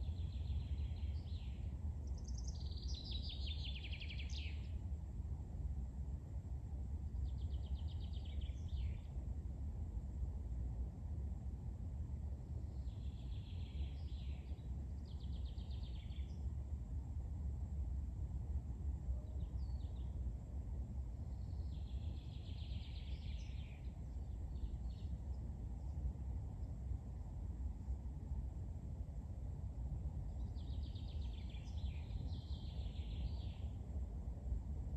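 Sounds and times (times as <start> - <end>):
songbird singing trilled phrases: 0.0 - 4.7, 12.7 - 16.4, 21.4 - 25.2, 30.4 - 33.7
steady low rumble: 0.0 - 34.9.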